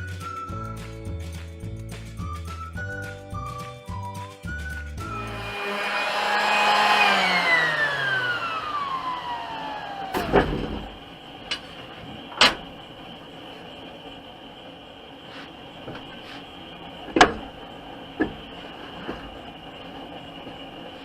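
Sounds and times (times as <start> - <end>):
power tool motor whining: 5.0 - 11.7.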